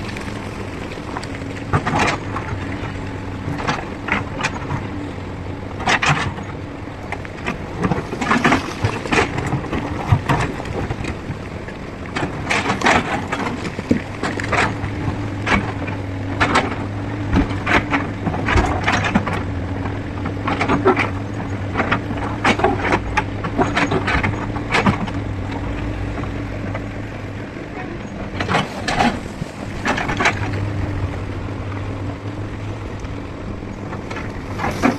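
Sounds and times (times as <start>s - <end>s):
diesel engine running: 0.0s - 34.9s
sharp knocks and clatter: 20.2s - 25.2s.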